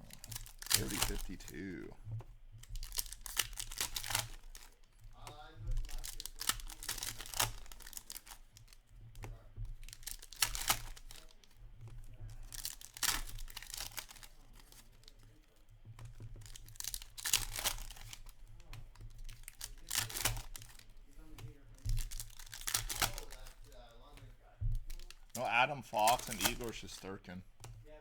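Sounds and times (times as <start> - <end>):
card packs tearing open: 0.0 - 1.9, 2.7 - 4.7, 5.9 - 8.4, 9.9 - 11.3, 12.5 - 14.4, 16.5 - 18.4, 19.3 - 20.8, 21.9 - 23.6, 24.9 - 27.2
wrappers crinkling: 0.0 - 28.0.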